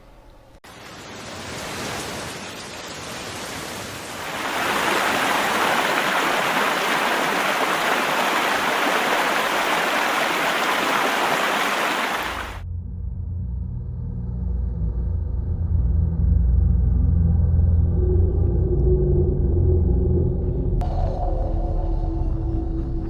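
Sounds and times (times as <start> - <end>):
flood water rushing: 0.7 - 12.6
low rumble: 12.6 - 23.0.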